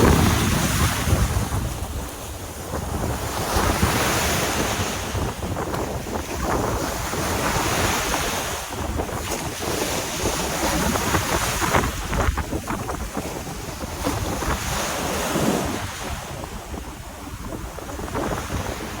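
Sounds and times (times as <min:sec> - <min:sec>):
surf breaking on beach: 0:00.0 - 0:19.0
wind buffeting microphone: 0:00.0 - 0:19.0.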